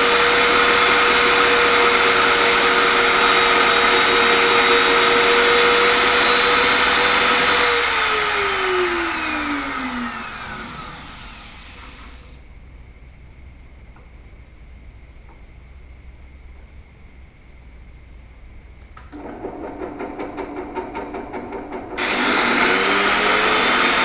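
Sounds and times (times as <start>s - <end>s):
router and drill press motor whine: 0.0s - 12.4s, 21.9s - 24.0s.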